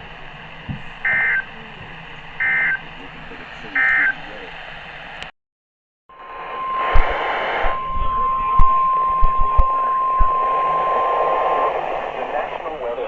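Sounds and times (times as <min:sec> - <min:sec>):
radio static crackles: 0:00.6 - 0:04.6, 0:06.2 - 0:13.0
steady warning alarm tone: 0:01.0 - 0:01.7, 0:02.4 - 0:02.9, 0:03.7 - 0:04.4, 0:06.1 - 0:12.6.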